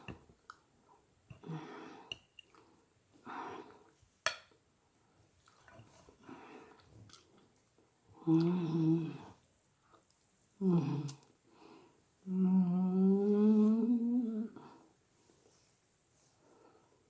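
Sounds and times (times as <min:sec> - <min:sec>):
person chewing food: 0:05.4 - 0:07.6
person humming mmm: 0:08.2 - 0:09.4, 0:10.6 - 0:11.3, 0:12.2 - 0:14.8.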